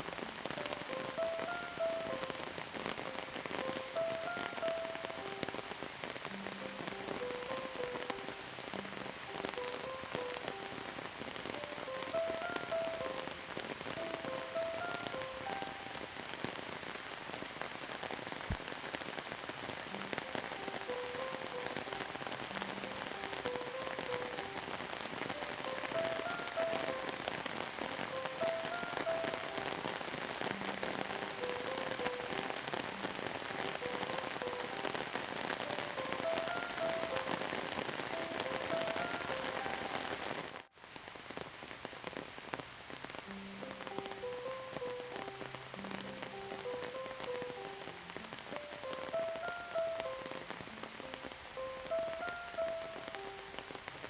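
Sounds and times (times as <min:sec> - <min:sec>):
soft slow music: 0:00.0 - 0:17.6, 0:18.3 - 0:40.6, 0:42.8 - 0:54.0
rain pattering: 0:00.0 - 0:54.0.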